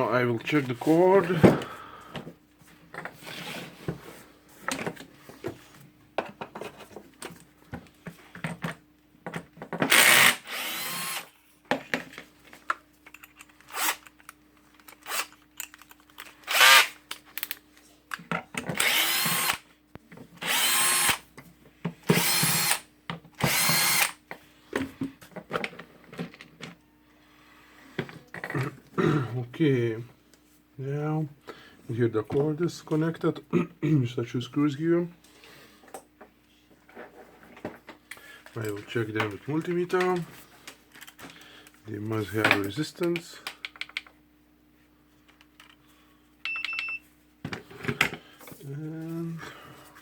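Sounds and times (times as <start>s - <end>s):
cordless drill whirring: 9.9s - 11.3s, 13.7s - 14.0s, 15.0s - 15.3s, 16.5s - 17.0s, 18.8s - 19.6s, 20.4s - 21.2s, 22.1s - 22.8s, 23.4s - 24.2s
parts and tools clicking: 12.7s - 19.6s, 43.0s - 44.2s.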